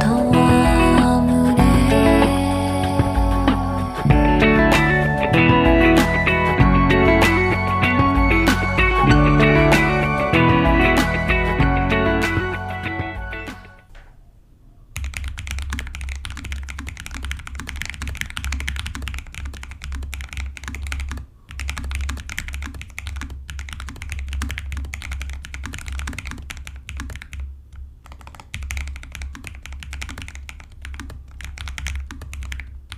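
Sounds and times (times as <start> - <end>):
mechanical keyboard typing: 15.0 - 32.9.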